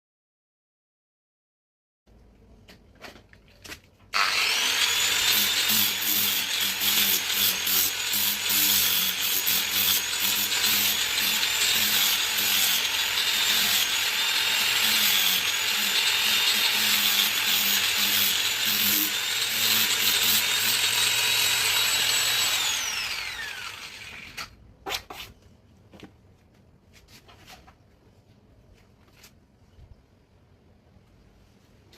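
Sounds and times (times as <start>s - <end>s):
angle grinder whining: 4.2s - 24.5s.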